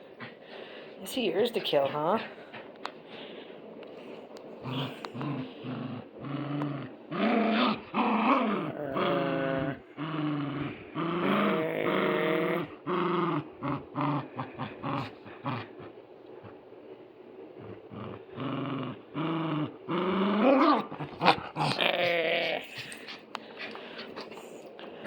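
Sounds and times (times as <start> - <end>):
puppy growling: 4.0 - 16.6, 17.5 - 25.0.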